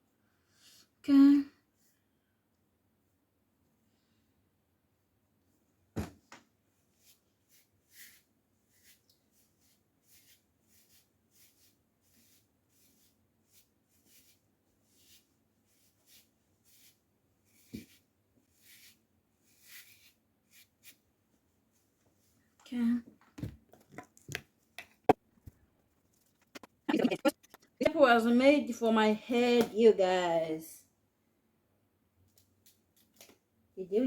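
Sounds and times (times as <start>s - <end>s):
faint rustling of hair: 6.7s - 22.8s.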